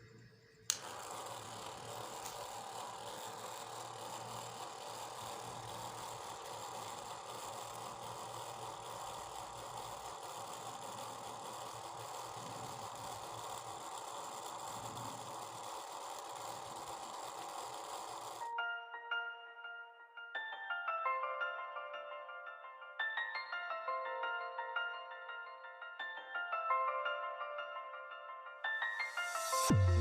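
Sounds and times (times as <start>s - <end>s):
small fan motor whirring: 0.0s - 18.5s.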